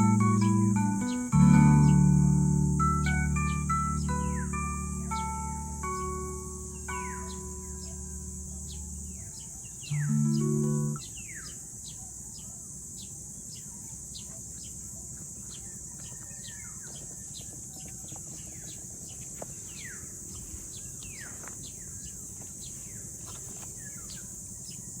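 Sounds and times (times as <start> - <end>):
high insect drone: 0.0 - 11.9
low background rumble: 1.4 - 11.0
birds whistling: 2.8 - 11.6.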